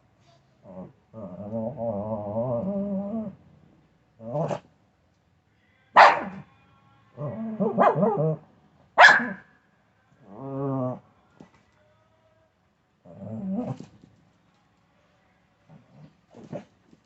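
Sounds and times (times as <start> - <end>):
small dog barking and growling: 4.2 - 4.7, 6.0 - 6.5, 7.2 - 8.4, 9.0 - 9.4, 13.1 - 13.9.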